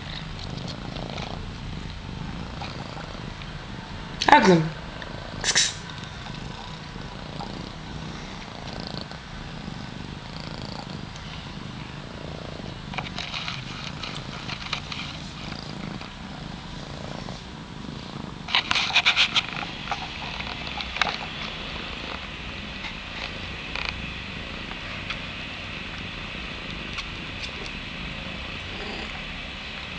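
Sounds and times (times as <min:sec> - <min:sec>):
crackly clicks and rustling: 0:00.0 - 0:02.0, 0:12.9 - 0:16.2, 0:18.5 - 0:24.0, 0:26.7 - 0:27.8
cats purring: 0:00.0 - 0:29.9.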